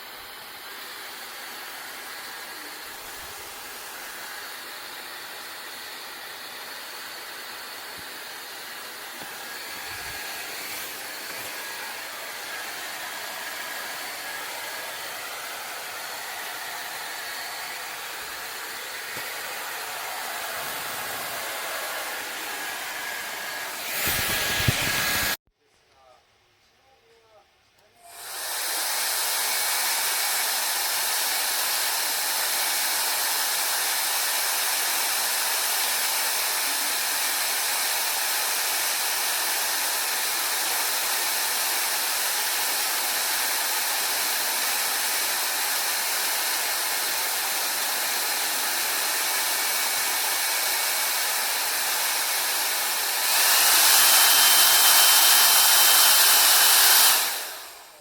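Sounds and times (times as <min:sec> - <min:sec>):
hair dryer blowing air: 0:00.0 - 0:25.4, 0:28.0 - 0:58.0.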